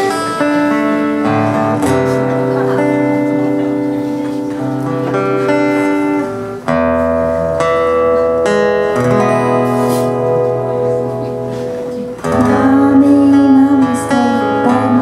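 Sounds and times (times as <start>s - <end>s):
guitar chords: 0.0s - 15.0s
bass: 12.3s - 15.0s.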